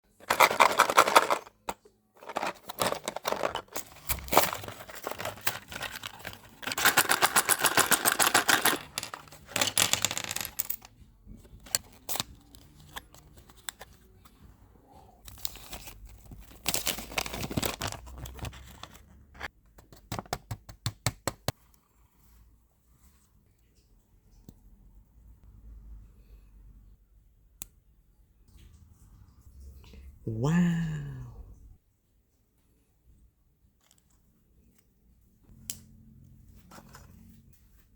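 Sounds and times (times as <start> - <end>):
plastic parts clicking: 0.2 - 10.9
plastic packet crinkling and tearing: 2.2 - 8.4, 15.3 - 19.0.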